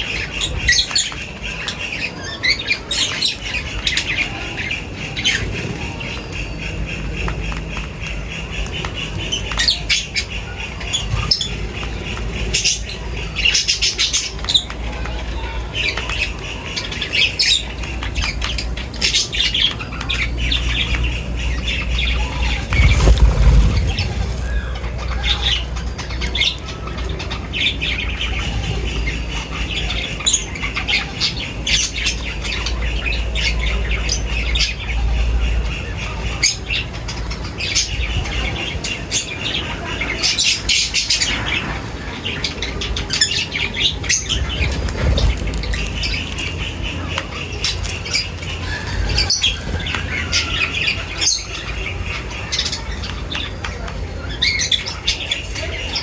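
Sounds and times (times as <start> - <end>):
birds chirping and squawking: 0.0 - 56.0
low rumble: 21.0 - 25.6
wings flapping: 21.8 - 25.8, 43.9 - 46.6, 47.6 - 51.0.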